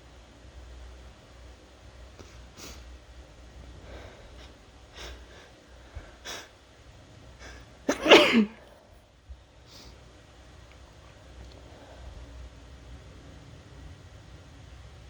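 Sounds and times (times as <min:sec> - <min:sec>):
person sneezing: 0:07.9 - 0:08.7.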